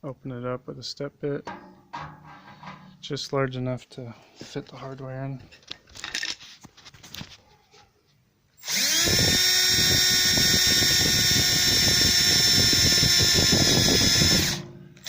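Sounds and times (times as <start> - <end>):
electric drill cutting sheet metal: 8.6 - 14.7.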